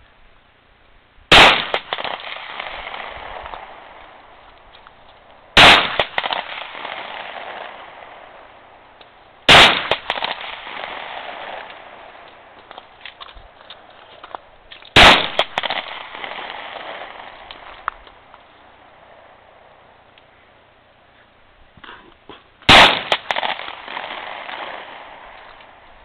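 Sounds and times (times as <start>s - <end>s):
loud gunshots with rolling echo: 1.3s - 4.4s, 5.6s - 8.8s, 9.5s - 12.6s, 15.0s - 17.8s, 22.7s - 25.8s.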